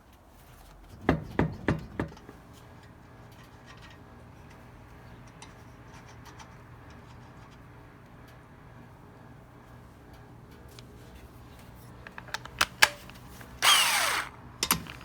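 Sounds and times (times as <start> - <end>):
sharp knocks: 1.0 - 2.4.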